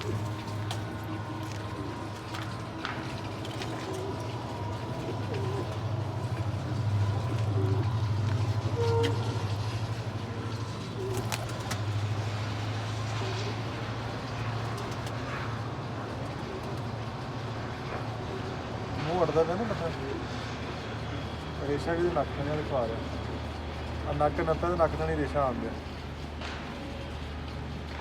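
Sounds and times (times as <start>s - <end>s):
pigeons cooing: 0.0s - 19.0s
steady low hum: 0.0s - 28.0s.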